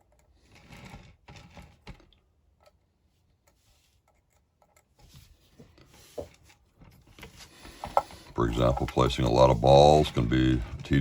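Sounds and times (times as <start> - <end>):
soft rubbing: 3.0 - 10.6.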